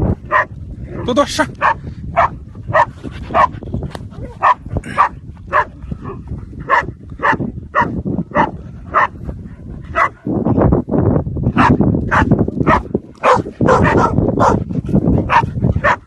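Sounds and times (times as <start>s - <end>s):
animal barking: 0.3s - 0.5s, 1.6s - 3.5s, 4.2s - 9.2s, 9.9s - 10.2s, 11.6s - 16.0s.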